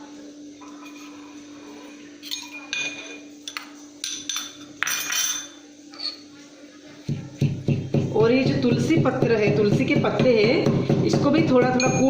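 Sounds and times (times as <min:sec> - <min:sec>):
metal utensils clinking: 0:02.2 - 0:06.2.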